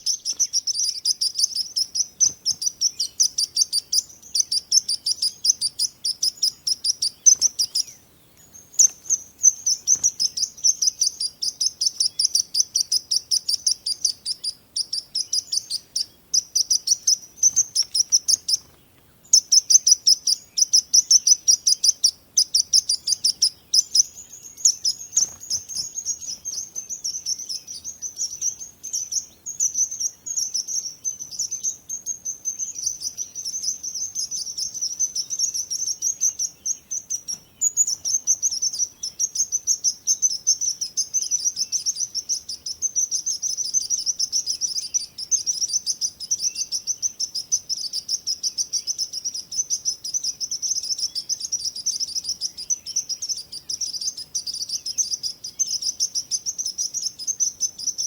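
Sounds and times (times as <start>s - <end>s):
birds chirping: 0.0s - 58.0s.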